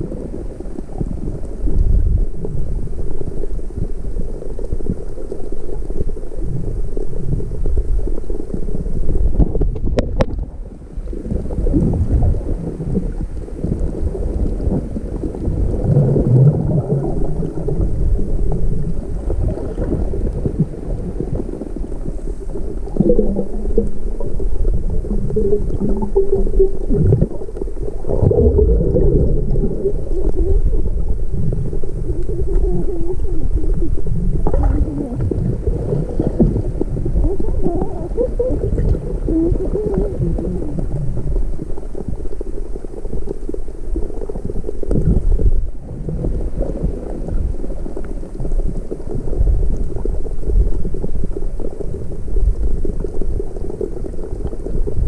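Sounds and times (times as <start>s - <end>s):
muffled underwater sloshing: 0.0s - 55.0s
wavering low tones: 22.9s - 41.2s.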